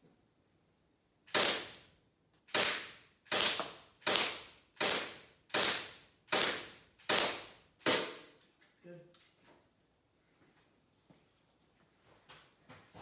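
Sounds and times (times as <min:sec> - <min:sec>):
airsoft pistol shots: 0:01.3 - 0:01.8, 0:02.5 - 0:08.4.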